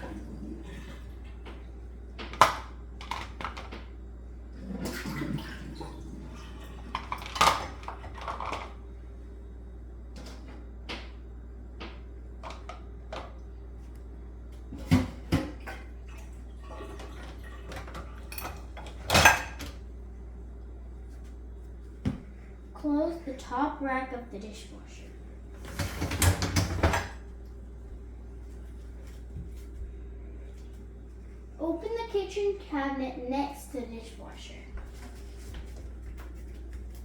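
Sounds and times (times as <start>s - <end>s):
bowls clinking in dishwasher rack: 16.8s - 19.8s.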